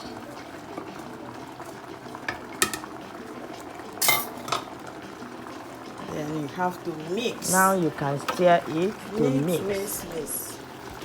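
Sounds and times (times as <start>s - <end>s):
pot simmering: 0.0s - 11.0s
utensil clinking against pot: 2.2s - 3.0s, 4.0s - 4.8s.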